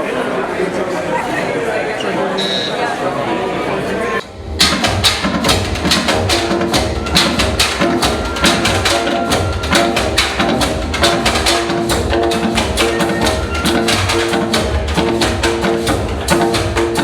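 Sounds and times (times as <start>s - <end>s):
percussion music: 4.2s - 17.0s
short repeated pitched notes: 4.2s - 17.0s.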